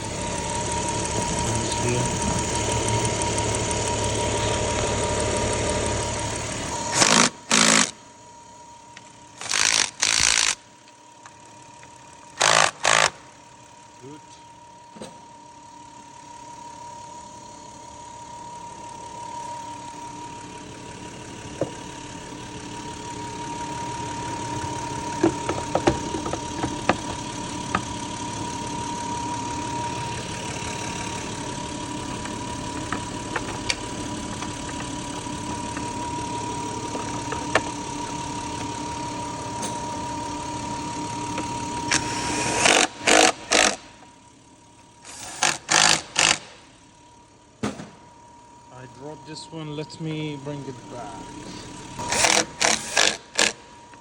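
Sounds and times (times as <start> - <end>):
car engine idling: 0.0 - 54.0
hand tools clicking: 9.4 - 10.6.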